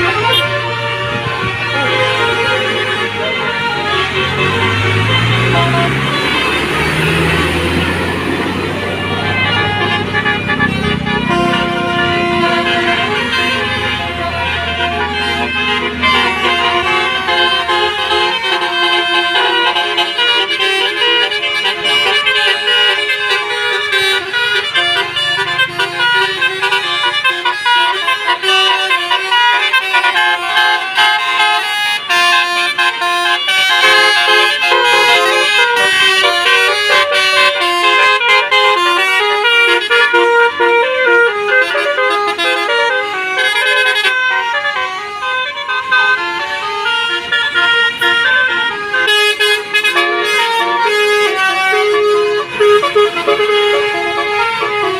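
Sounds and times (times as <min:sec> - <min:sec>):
multi-tone bus air horn tune: 0:00.0 - 0:54.9.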